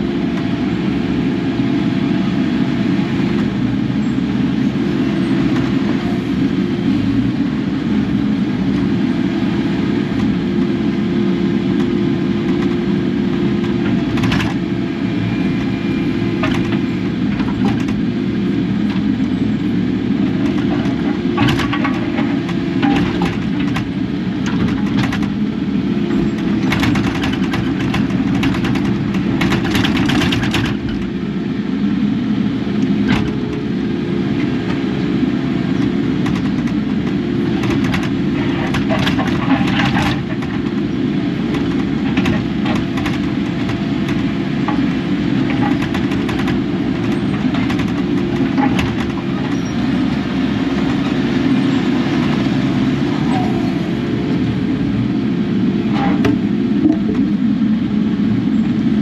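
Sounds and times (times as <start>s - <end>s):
excavator diesel engine running: 0.0s - 59.0s
metallic clanking and rattling: 36.2s - 40.9s.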